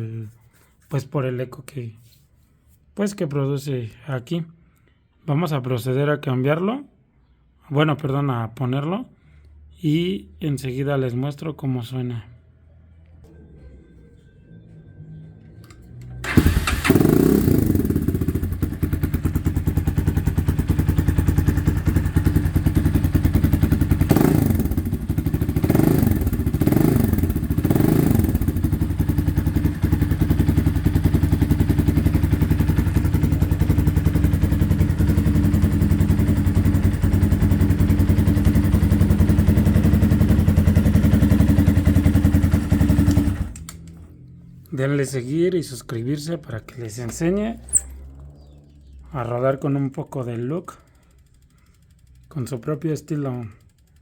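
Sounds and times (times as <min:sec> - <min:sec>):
motorcycle engine revving and idling: 0:14.7 - 0:44.6, 0:47.1 - 0:49.4, 0:50.4 - 0:54.0.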